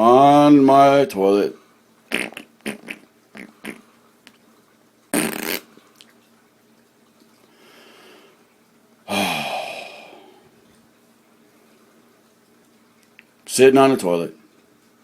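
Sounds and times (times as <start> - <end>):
comic fart sound effects: 2.1 - 3.9, 5.1 - 5.7.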